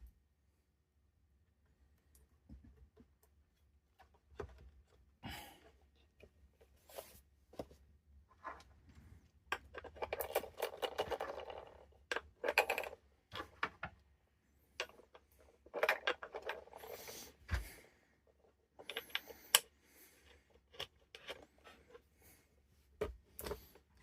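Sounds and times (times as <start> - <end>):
plastic parts clicking and rattling: 9.5 - 14.1, 14.7 - 17.7, 18.3 - 22.0.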